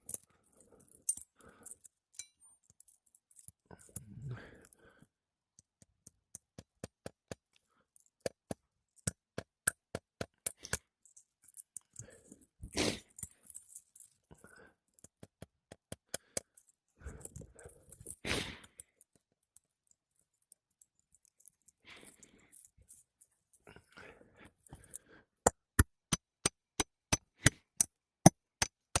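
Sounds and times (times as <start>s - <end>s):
sharp taps on shingles: 28.3s - 29.0s.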